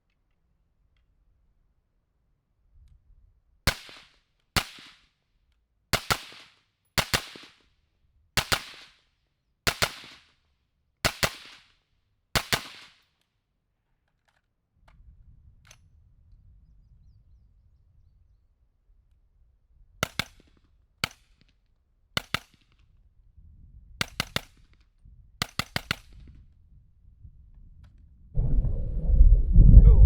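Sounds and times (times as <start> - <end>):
low wind rumble: 15.0 - 18.6, 26.2 - 30.0.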